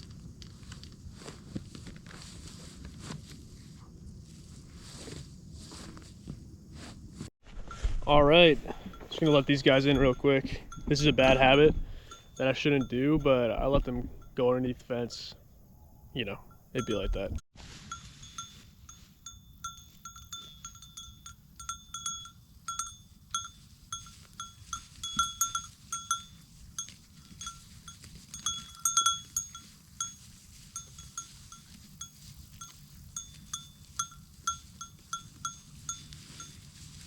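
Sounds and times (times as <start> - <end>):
sheep bell clanking: 8.2 - 15.0, 16.3 - 37.0.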